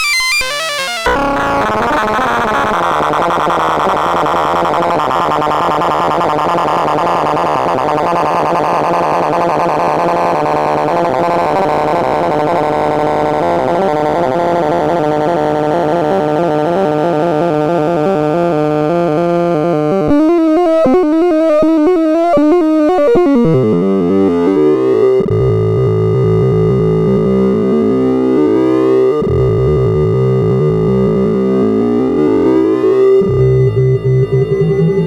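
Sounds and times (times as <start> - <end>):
rising pitch sweeps: 0.0 - 15.3
rapid synthesized tones: 0.0 - 17.2.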